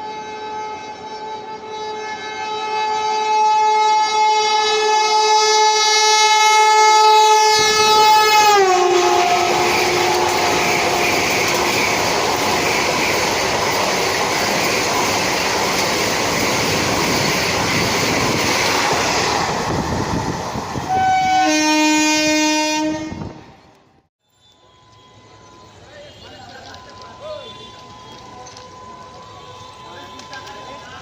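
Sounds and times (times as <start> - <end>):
train horn: 0.0 - 11.8, 20.9 - 23.6, 27.3 - 30.9
rush of train wheels on track: 3.9 - 21.9, 24.7 - 31.0.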